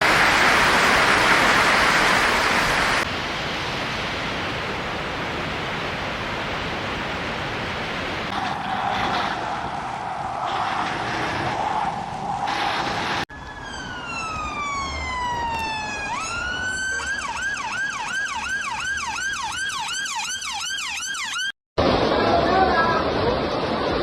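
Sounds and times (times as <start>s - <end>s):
steady rushing noise: 0.0s - 13.3s
emergency siren wailing and yelping: 8.4s - 21.6s.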